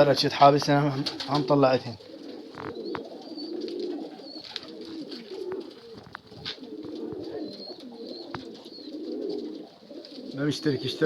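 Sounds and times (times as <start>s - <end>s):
pigeons cooing: 0.0s - 11.0s.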